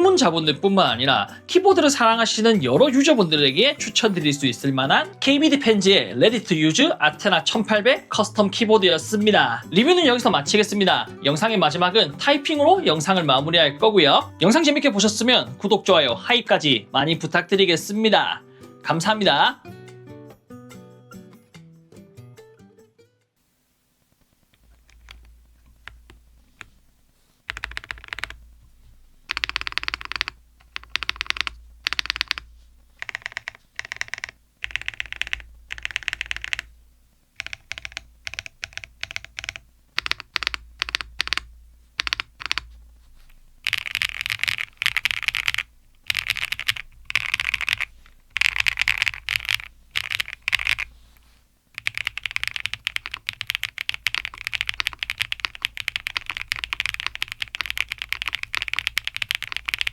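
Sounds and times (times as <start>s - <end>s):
mechanical keyboard keys clacking: 24.6s - 26.8s, 27.5s - 28.5s, 29.2s - 36.7s, 37.4s - 42.7s, 43.3s - 50.9s, 51.8s - 59.9s.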